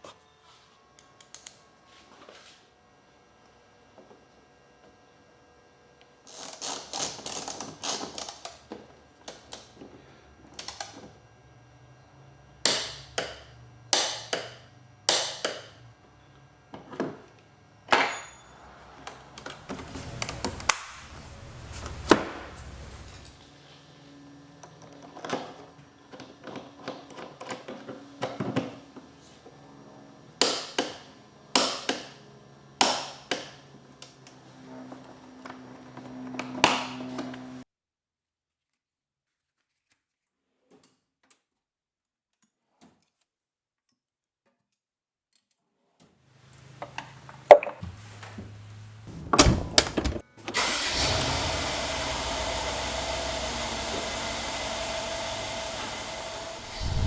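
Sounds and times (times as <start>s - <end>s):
handling noise: 18.0s - 23.4s.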